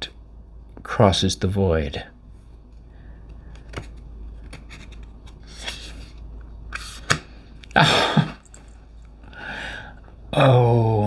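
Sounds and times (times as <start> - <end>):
cards rustling: 2.4 - 9.3
cards sliding and rubbing: 3.3 - 7.8
card clicks and taps: 3.4 - 5.9, 6.7 - 7.8.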